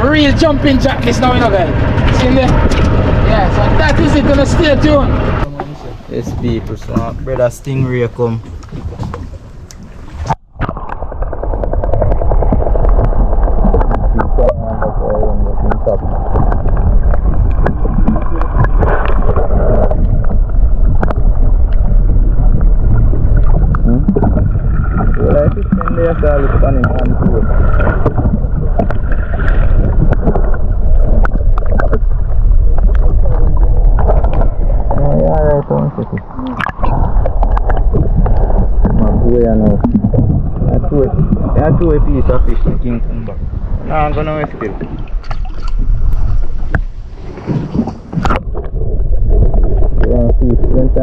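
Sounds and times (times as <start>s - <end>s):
outboard motor running: 0.0s - 9.2s
boat engine rumble: 0.0s - 51.0s
wind on microphone: 0.0s - 51.0s.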